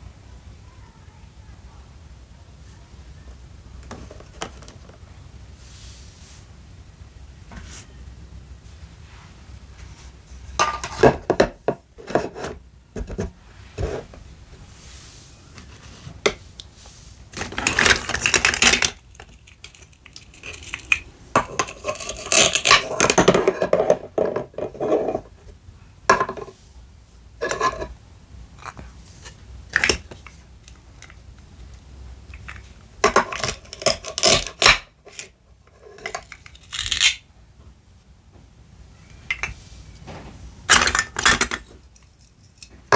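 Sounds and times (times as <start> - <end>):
toy kitchenware clinking and clattering: 10.6 - 12.6, 17.4 - 25.3, 27.4 - 27.9, 32.3 - 37.2, 40.7 - 42.9.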